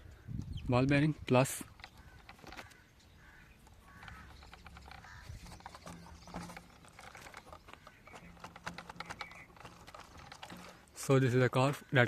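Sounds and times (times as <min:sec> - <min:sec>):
metal toy car parts clicking: 0:03.6 - 0:11.1.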